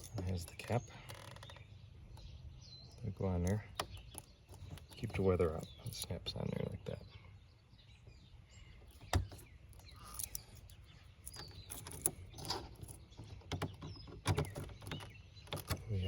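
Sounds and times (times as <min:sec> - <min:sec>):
lock parts clicking: 0:00.0 - 0:02.3, 0:03.4 - 0:06.1, 0:08.9 - 0:15.9
birds chirping: 0:00.0 - 0:16.0.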